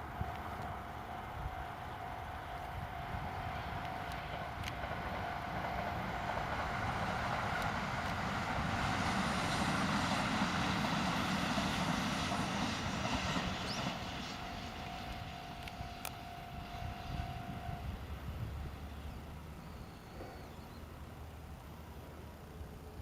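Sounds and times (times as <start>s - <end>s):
electric train rumbling past: 0.0s - 23.0s
level crossing warning bell: 14.4s - 18.1s.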